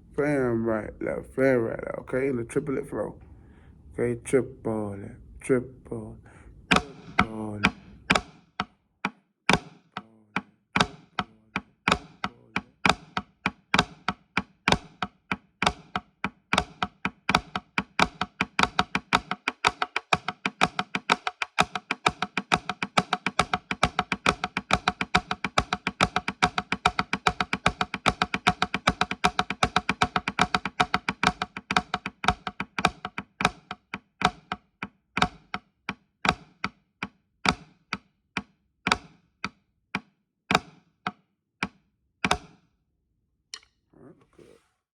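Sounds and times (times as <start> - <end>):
drumsticks tapping: 6.7 - 37.8.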